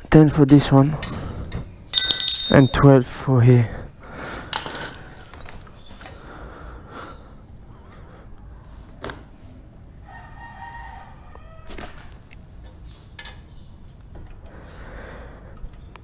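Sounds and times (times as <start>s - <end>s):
hand tools clicking: 2.0s - 2.8s
rooster crowing: 10.0s - 12.1s.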